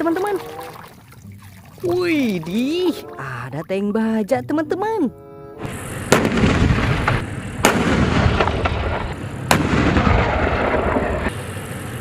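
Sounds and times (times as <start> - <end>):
water rushing and splashing: 0.0 - 4.2.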